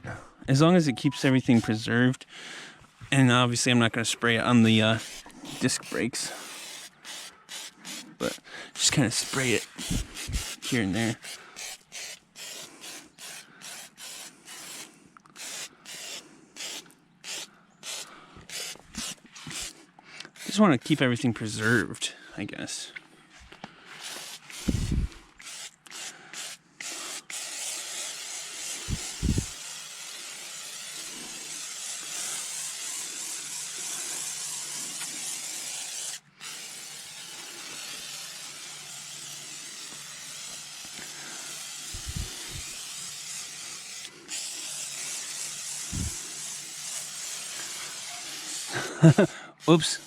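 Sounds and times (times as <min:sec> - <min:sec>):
aerosol can spraying: 0:04.6 - 0:21.0, 0:24.0 - 0:50.0.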